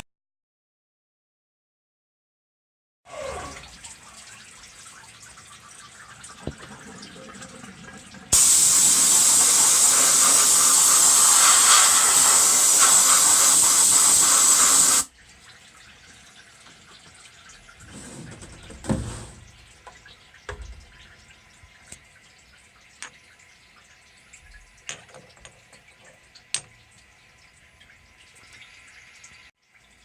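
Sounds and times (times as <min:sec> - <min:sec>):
pressurised spray hissing: 0:08.3 - 0:15.1.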